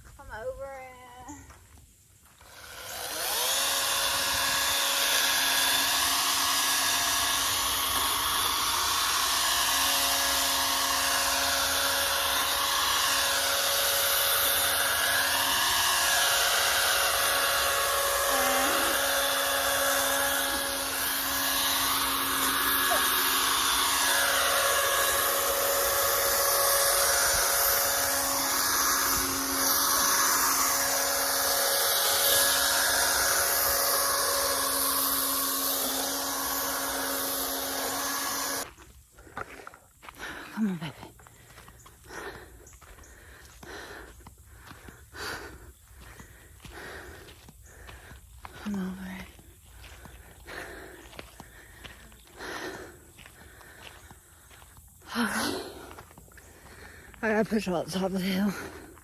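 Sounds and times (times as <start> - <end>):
chainsaw running: 2.2 - 59.0.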